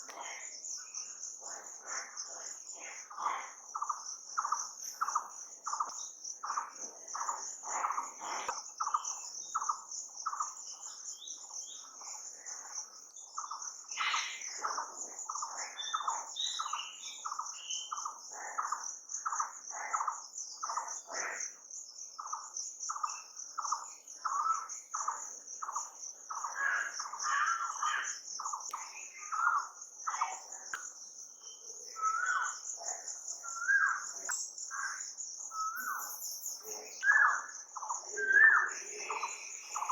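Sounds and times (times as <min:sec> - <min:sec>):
crickets trilling: 0:00.0 - 0:39.9
birds calling: 0:26.3 - 0:39.9.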